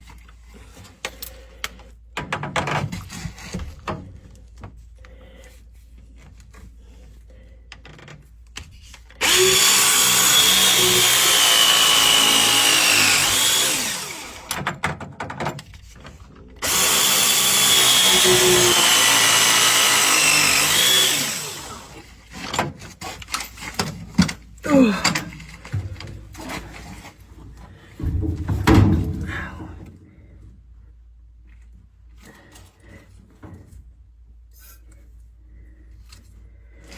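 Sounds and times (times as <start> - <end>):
pipe press tool motor whine: 9.2 - 14.6, 16.6 - 22.2
handling knocks and clatter: 14.5 - 16.6, 22.3 - 30.0.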